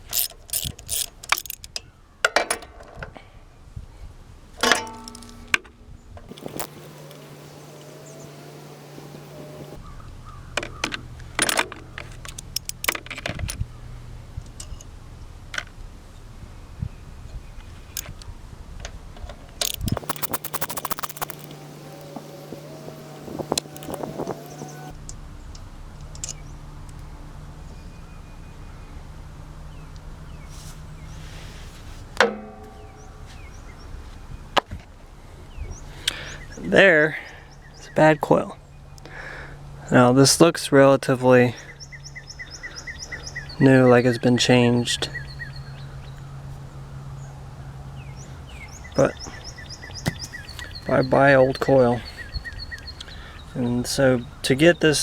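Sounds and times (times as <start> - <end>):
metal parts and tools clinking: 0.0 - 2.8, 4.6 - 5.6, 19.6 - 24.9
steady low hum: 19.7 - 27.9.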